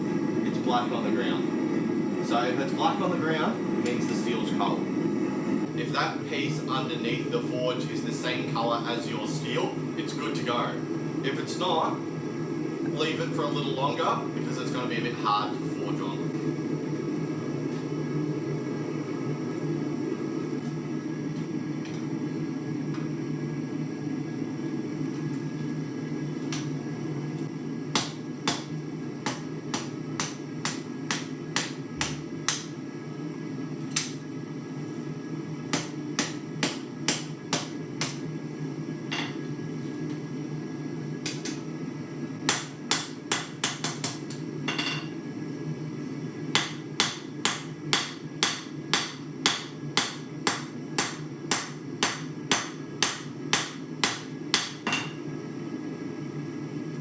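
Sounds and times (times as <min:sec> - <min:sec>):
gas forge burner: 0:00.0 - 0:57.0
hammer striking hot steel on anvil: 0:27.9 - 0:32.8, 0:33.9 - 0:34.2, 0:35.7 - 0:38.3, 0:39.1 - 0:39.4, 0:41.2 - 0:41.7, 0:42.5 - 0:45.2, 0:46.5 - 0:55.2.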